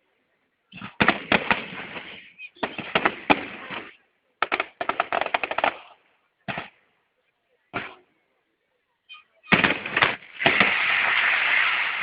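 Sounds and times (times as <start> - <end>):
fireworks bangs and crackles: 0.9 - 5.9, 9.5 - 12.0.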